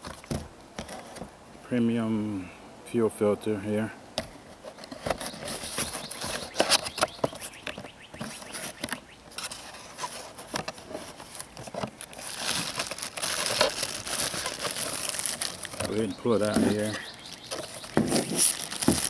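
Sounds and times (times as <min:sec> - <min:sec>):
packaging rustling and clicking: 0:04.8 - 0:19.0.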